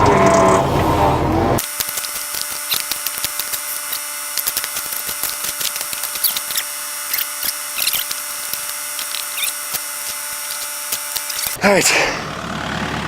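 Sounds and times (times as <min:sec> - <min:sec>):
steady hum: 0:00.0 - 0:13.0
tool scraping in soil: 0:01.6 - 0:11.6.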